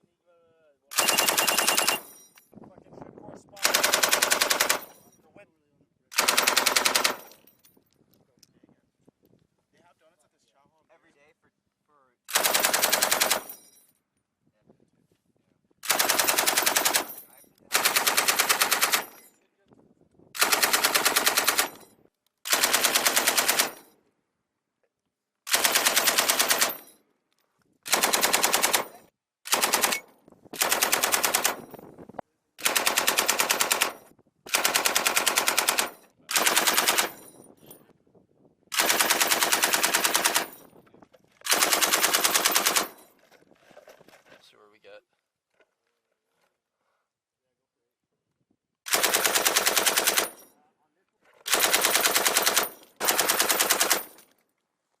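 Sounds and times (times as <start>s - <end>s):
machine gun bursts: 0.9s - 2.1s, 3.6s - 5.0s, 6.2s - 7.4s, 12.3s - 13.5s, 15.8s - 19.2s, 20.4s - 21.8s, 22.5s - 23.8s, 25.5s - 26.8s, 27.9s - 31.6s, 32.6s - 37.2s, 38.7s - 40.6s, 41.4s - 43.0s, 48.9s - 50.4s, 51.4s - 54.2s.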